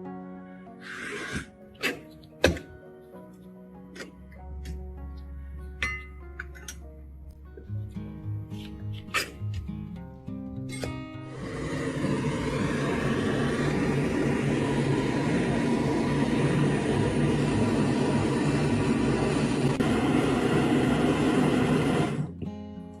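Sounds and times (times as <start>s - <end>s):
background music: 0.0s - 23.0s
angle grinder running: 11.3s - 22.3s.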